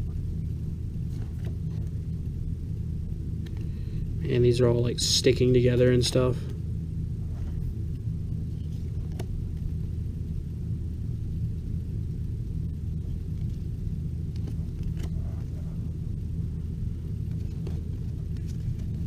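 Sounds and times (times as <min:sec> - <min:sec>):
low rumble: 0:00.0 - 0:19.0
cards being handled: 0:14.3 - 0:15.6, 0:17.2 - 0:19.0.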